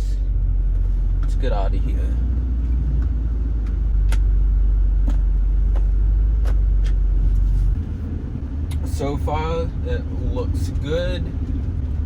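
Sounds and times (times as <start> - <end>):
car engine rumble in cabin: 0.0 - 12.0.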